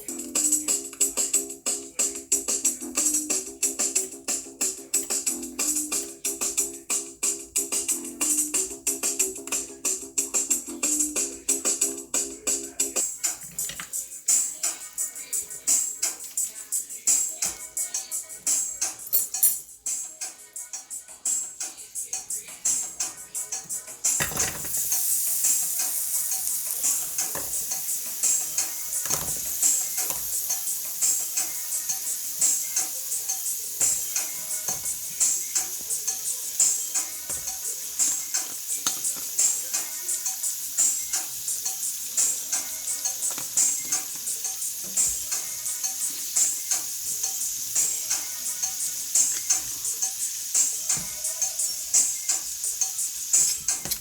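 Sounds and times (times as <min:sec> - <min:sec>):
faint background music: 0:00.0 - 0:54.0
food sizzling in a pan: 0:22.3 - 0:54.0.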